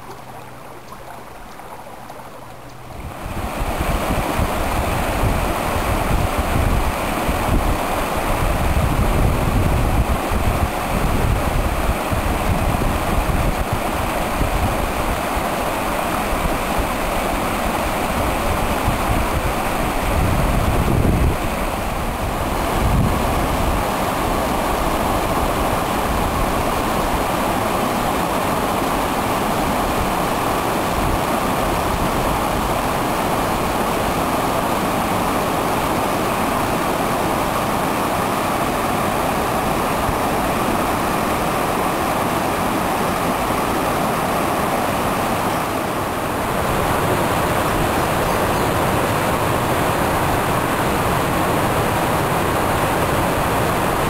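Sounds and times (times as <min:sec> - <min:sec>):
wind rumbling on microphone: 0:00.0 - 0:27.5, 0:45.8 - 0:54.0
stream water rushing: 0:00.0 - 0:54.0.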